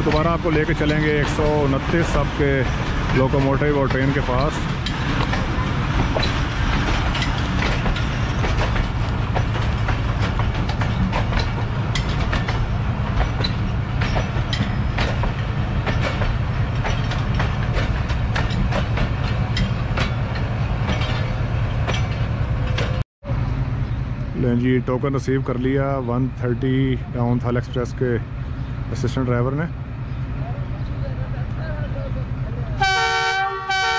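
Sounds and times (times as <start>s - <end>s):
sharp clicks and clanks: 0.0s - 23.0s
diesel locomotive engine humming: 0.0s - 33.9s.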